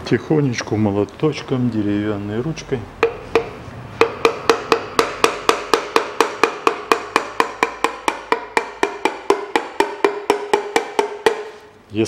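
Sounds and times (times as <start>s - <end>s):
hammer handle tapping on metal: 3.0s - 11.7s.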